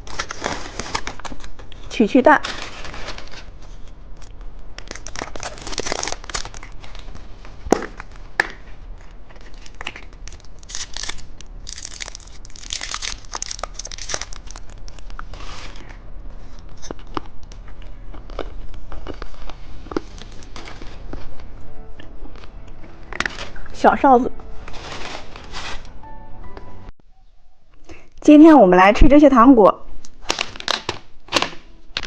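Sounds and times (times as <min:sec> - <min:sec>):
plastic packaging crinkling: 0:00.0 - 0:21.5, 0:30.0 - 0:32.0.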